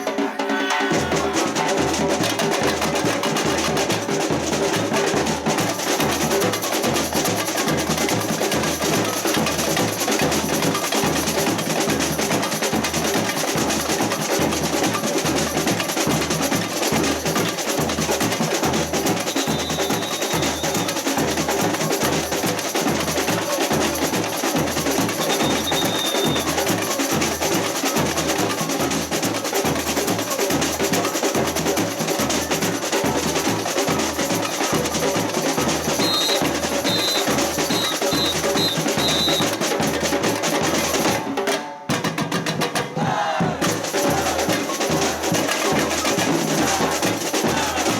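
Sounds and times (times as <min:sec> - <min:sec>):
samba percussion ensemble: 0:00.0 - 0:47.9.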